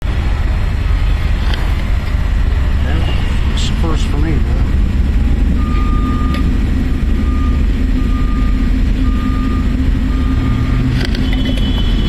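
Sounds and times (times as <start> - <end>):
engine running low rumble: 0.0 - 12.0
electronic warning beeper: 5.5 - 10.9.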